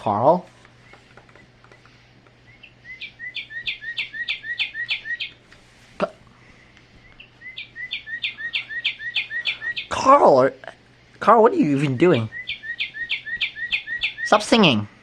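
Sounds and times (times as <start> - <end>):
recorded bird song whistles: 2.5 - 5.4, 7.0 - 10.0, 11.8 - 14.4.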